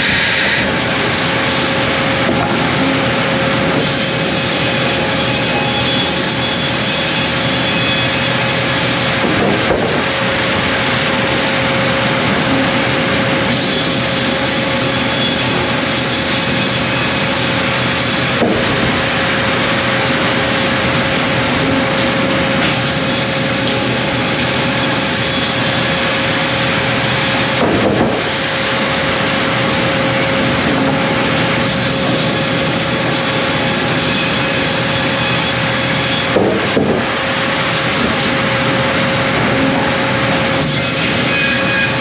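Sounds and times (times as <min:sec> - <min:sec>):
constant saw whine: 0:00.0 - 0:42.0
band saw sawing through log: 0:03.8 - 0:09.6, 0:13.5 - 0:20.9, 0:22.6 - 0:30.0, 0:31.6 - 0:38.5, 0:40.6 - 0:42.0.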